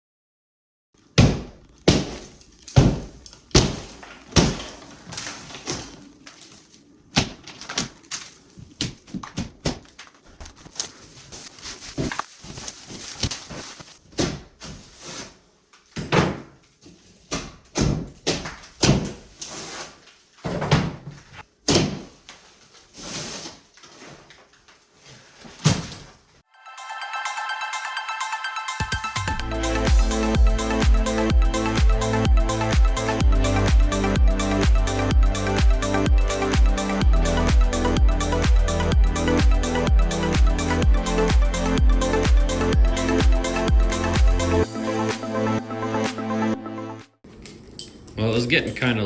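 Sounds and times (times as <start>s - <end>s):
drywall thuds and knocks: 1.2s - 4.9s, 16.0s - 16.6s, 17.3s - 19.2s, 20.4s - 22.2s.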